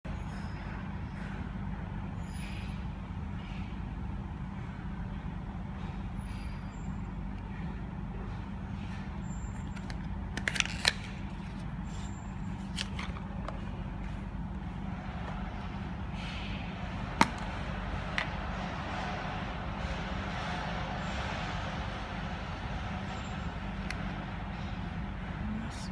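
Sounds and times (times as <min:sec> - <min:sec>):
steady low rumble: 0:06.9 - 0:25.9
plastic packaging clicks: 0:09.6 - 0:11.7, 0:17.2 - 0:18.2.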